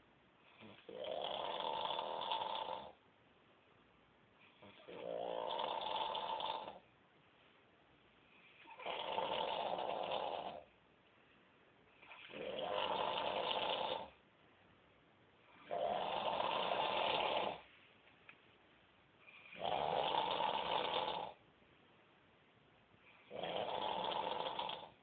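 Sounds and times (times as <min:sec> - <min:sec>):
man snoring: 0:00.5 - 0:03.0, 0:04.6 - 0:06.8, 0:08.6 - 0:10.7, 0:12.0 - 0:14.2, 0:15.6 - 0:17.6, 0:19.4 - 0:21.4, 0:23.2 - 0:25.0.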